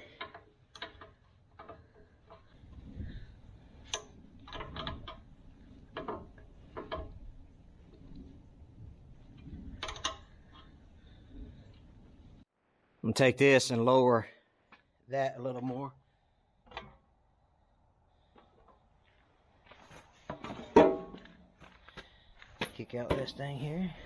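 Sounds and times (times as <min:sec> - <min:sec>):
metal clicks and scrapes: 0:00.0 - 0:02.8, 0:03.8 - 0:08.2, 0:09.3 - 0:10.8.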